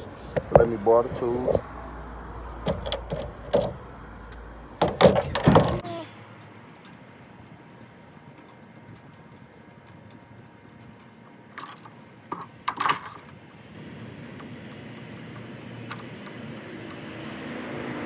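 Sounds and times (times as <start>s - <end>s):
steady background noise: 0.0s - 18.0s
sharp clicks and knocks: 2.6s - 5.8s, 14.2s - 17.1s.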